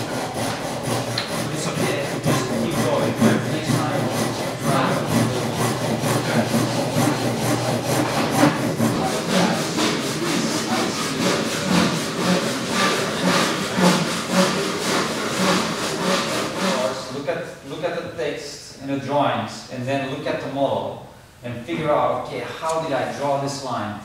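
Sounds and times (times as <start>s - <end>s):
hand saw cutting wood: 0.0s - 17.2s.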